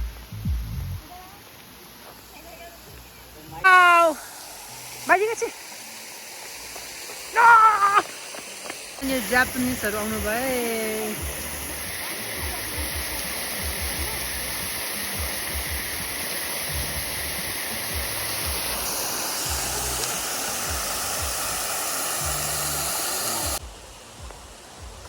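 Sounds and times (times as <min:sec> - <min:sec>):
low rumbles: 0:00.0 - 0:01.1
rushing water: 0:01.0 - 0:25.0.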